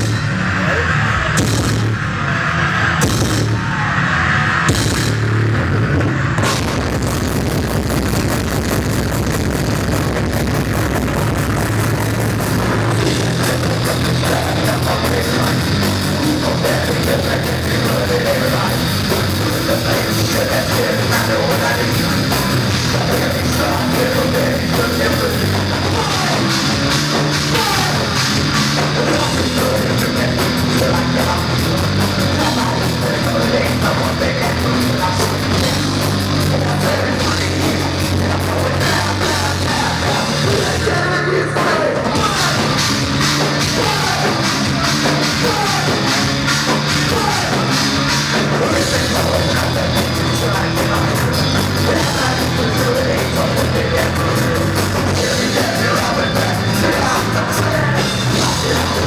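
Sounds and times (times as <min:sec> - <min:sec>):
distorted guitars: 0:00.0 - 0:59.0
drums: 0:00.0 - 0:59.0
person singing: 0:12.7 - 0:59.0.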